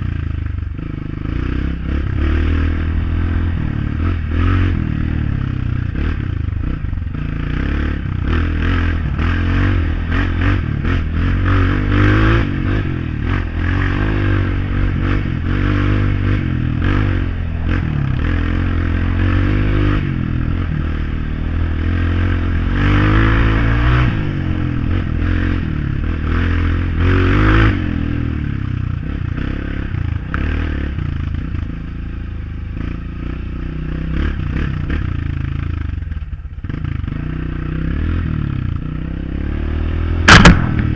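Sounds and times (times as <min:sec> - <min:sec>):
dirt bike engine revving: 0:00.0 - 0:35.7, 0:36.6 - 0:40.9.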